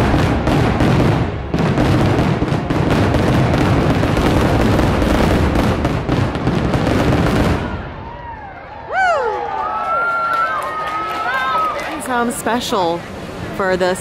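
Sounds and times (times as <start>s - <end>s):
fireworks bursting and booming: 0.0s - 8.3s.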